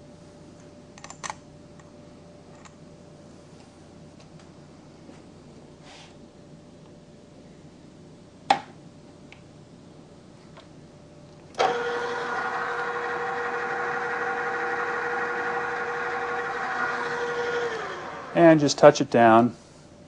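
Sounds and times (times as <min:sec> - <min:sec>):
drill press motor humming: 0:11.6 - 0:18.8.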